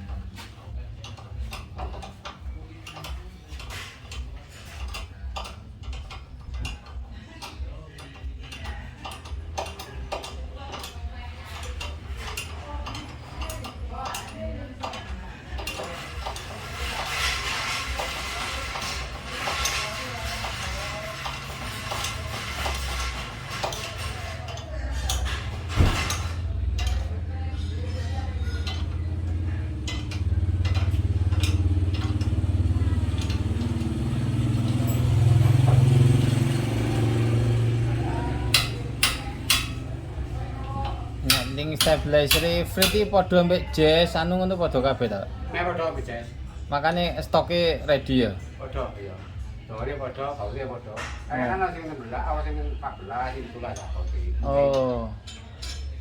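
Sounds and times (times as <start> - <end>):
metal tools clinking: 0.0 - 45.1, 53.0 - 56.0
vehicle engine running: 7.7 - 50.6.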